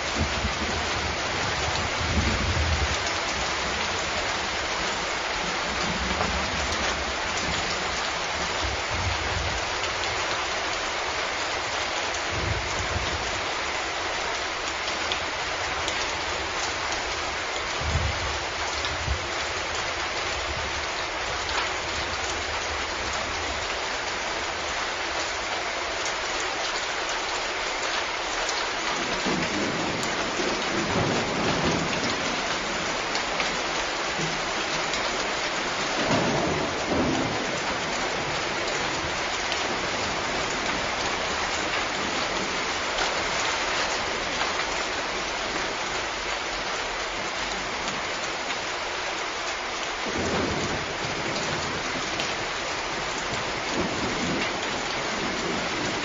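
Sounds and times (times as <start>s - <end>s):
thunder rumbling: 0.0s - 7.6s, 29.0s - 43.6s, 50.0s - 56.0s
steady rain falling: 0.0s - 56.0s.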